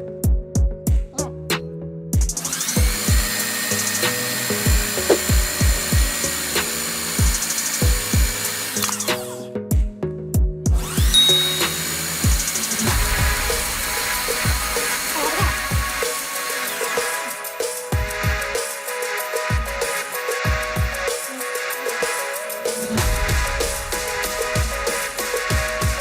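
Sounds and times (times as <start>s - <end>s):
music with deep bass drum: 0.2s - 1.4s, 2.2s - 8.5s, 9.7s - 11.2s, 11.8s - 16.0s, 18.0s - 18.6s, 22.8s - 26.0s
power tool running: 2.4s - 9.5s, 10.8s - 17.8s, 22.8s - 26.0s.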